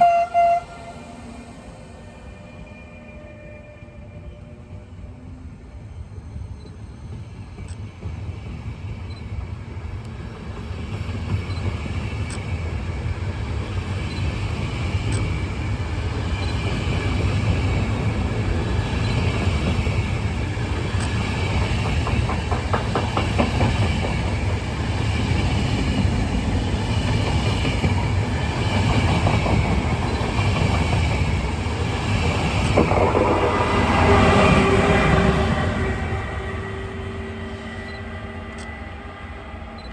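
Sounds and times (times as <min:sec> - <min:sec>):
passenger train passing: 0:00.0 - 0:39.9
wheels clicking over rail joints: 0:20.9 - 0:24.6.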